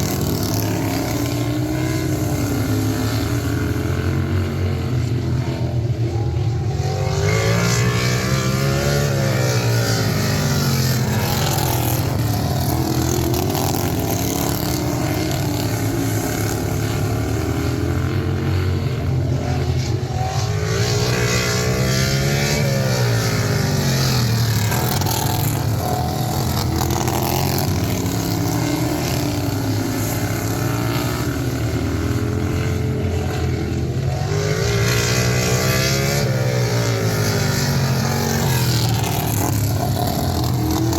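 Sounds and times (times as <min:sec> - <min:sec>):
lawn tractor engine revving: 0:21.2 - 0:31.2.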